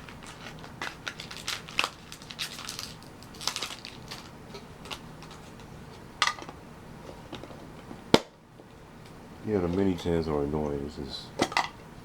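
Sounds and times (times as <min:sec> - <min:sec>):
foil packs crinkling: 0:00.0 - 0:05.8.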